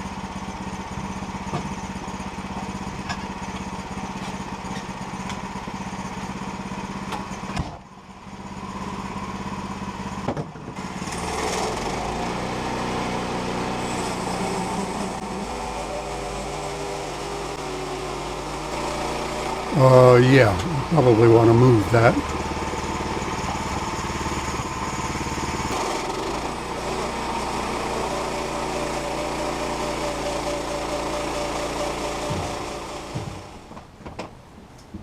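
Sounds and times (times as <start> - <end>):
sawmill engine running: 10.8 - 33.8.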